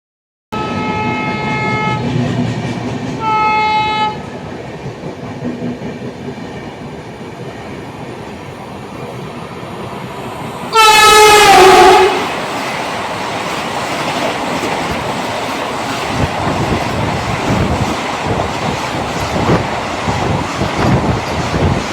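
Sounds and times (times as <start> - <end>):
train horn blasts: 0.5 - 2.0, 3.2 - 4.2, 10.7 - 12.3
rush of train passing: 0.6 - 21.9
train rumble: 0.6 - 21.9.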